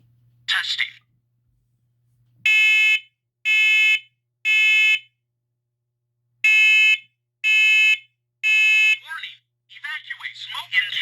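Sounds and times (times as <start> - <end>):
smoke alarm beeping: 6.4 - 8.9.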